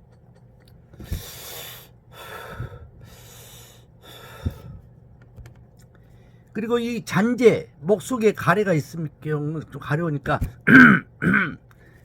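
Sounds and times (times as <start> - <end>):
man breathing deeply through mouth: 1.0 - 4.9.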